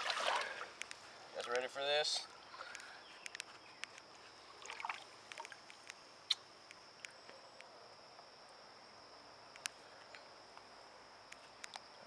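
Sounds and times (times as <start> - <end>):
small water splashes: 0.0 - 0.8, 4.4 - 5.8
high insect drone: 0.3 - 12.0.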